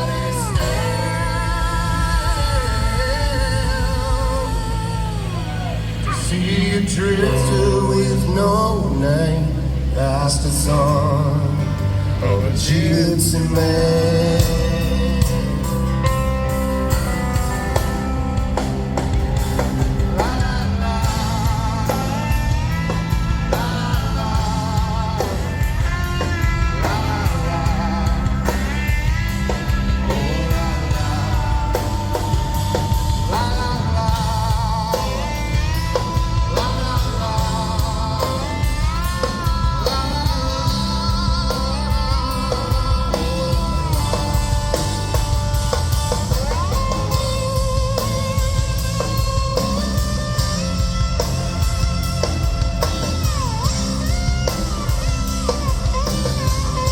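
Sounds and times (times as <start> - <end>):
bass: 0.0 - 56.9
bent lead guitar notes: 0.0 - 56.9
drums: 0.0 - 56.9.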